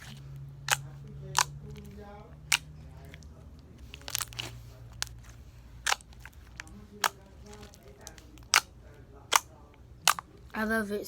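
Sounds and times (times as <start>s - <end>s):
slime squeezed with pops: 5.8s - 7.2s.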